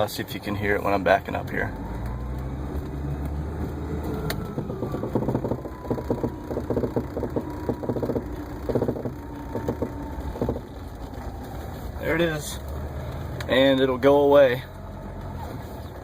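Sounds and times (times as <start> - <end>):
diesel engine running: 0.0 - 16.0
rapid clicking from wheel well: 4.6 - 10.8.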